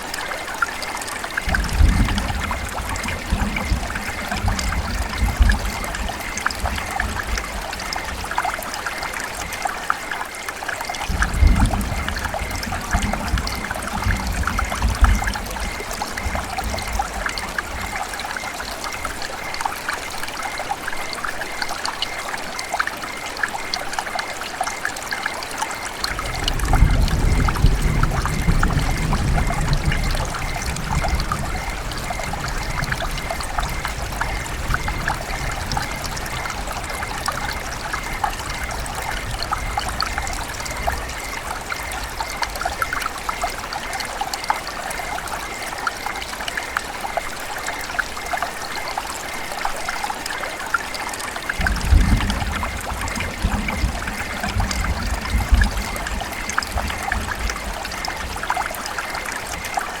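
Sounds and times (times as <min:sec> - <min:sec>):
river water babbling: 0:00.0 - 1:00.0.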